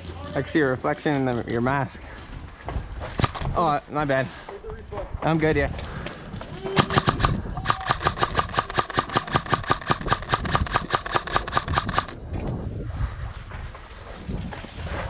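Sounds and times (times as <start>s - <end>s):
airsoft rifle rapid firing: 3.2s - 3.6s, 6.8s - 12.2s.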